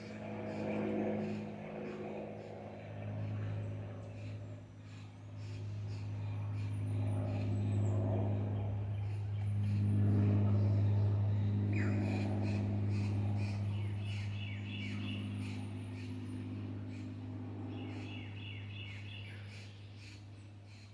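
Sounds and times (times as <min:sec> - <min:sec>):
low mechanical hum: 0:00.0 - 0:20.9
birds chirping: 0:03.6 - 0:20.5.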